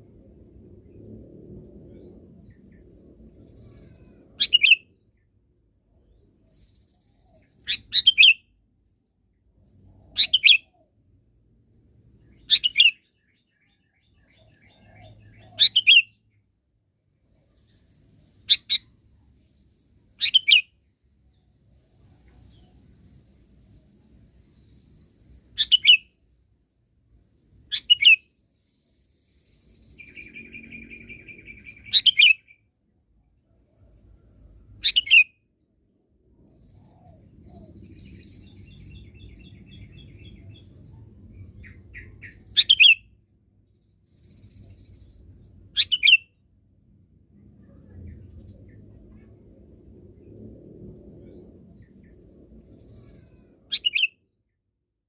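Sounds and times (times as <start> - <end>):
faint low rumble: 0.0 - 10.2, 10.8 - 55.0
buzzy bird trill: 3.6 - 4.8, 53.0 - 54.1.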